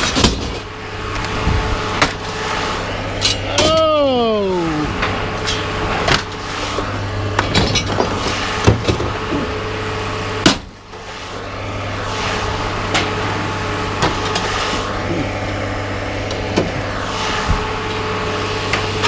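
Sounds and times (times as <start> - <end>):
metal scrap knocks and clanks: 0.0 - 0.7, 7.4 - 9.1
low machine hum: 0.0 - 19.0.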